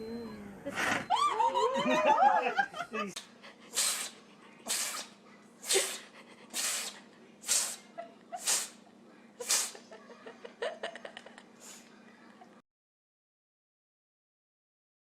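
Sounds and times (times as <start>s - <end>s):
animal sneezing: 3.7s - 8.8s, 9.4s - 9.8s.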